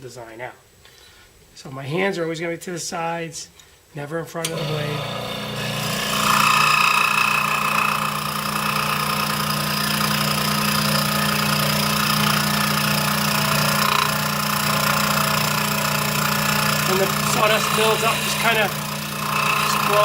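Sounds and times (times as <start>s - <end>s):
scroll saw cutting: 4.4s - 20.0s.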